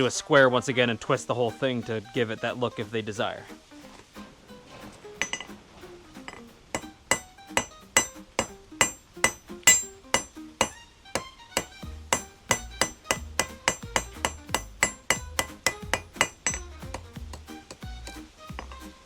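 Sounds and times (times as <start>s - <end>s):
background music with bass line: 0.0s - 19.0s
hammer striking steel on anvil: 5.2s - 5.6s, 6.3s - 18.9s.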